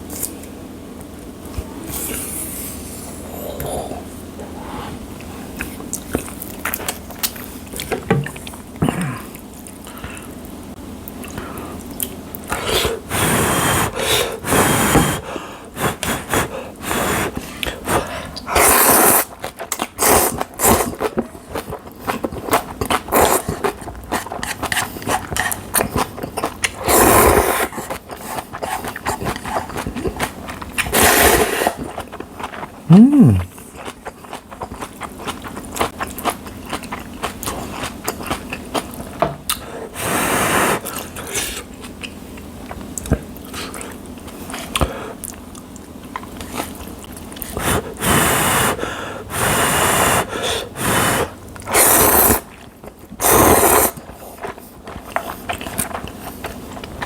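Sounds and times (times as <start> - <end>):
noodles slurped: 15.8 - 36.3, 47.4 - 52.6, 53.2 - 57.0
wet chewing: 17.4 - 39.7, 51.4 - 57.0.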